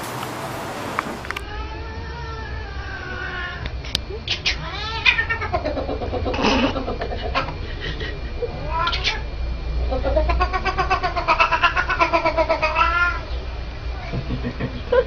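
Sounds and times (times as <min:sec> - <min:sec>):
cat yowling: 0:01.4 - 0:07.6, 0:08.5 - 0:09.3, 0:09.9 - 0:13.3.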